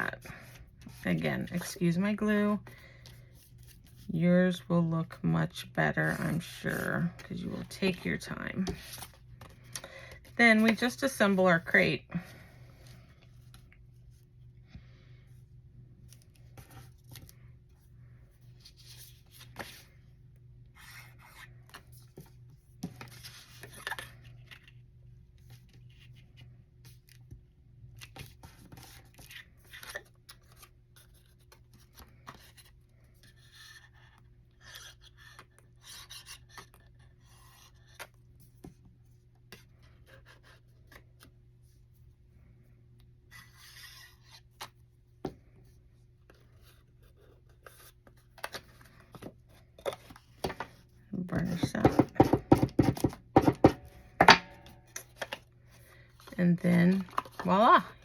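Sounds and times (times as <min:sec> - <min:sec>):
cardstock rustling and tapping: 0:51.4 - 0:55.4.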